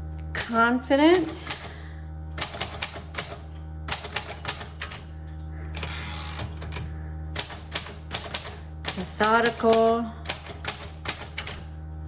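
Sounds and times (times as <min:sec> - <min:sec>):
typewriter keys clacking: 0:02.4 - 0:05.0, 0:05.8 - 0:11.6.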